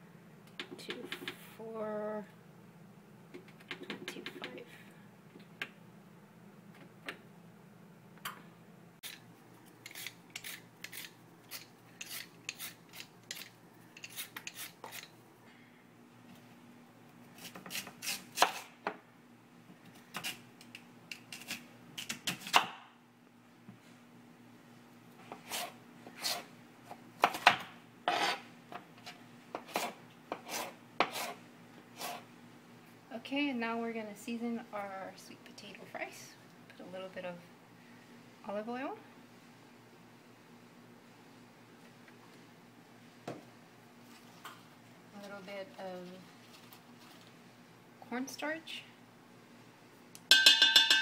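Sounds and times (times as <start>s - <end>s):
knife rasping through sweet potato: 9.8s - 15.1s, 25.3s - 26.5s, 28.1s - 28.4s, 29.6s - 32.3s.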